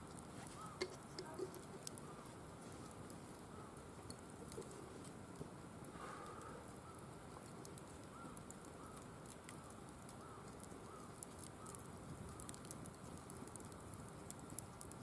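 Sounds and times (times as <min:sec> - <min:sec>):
firewood crackling: 0:00.0 - 0:15.0.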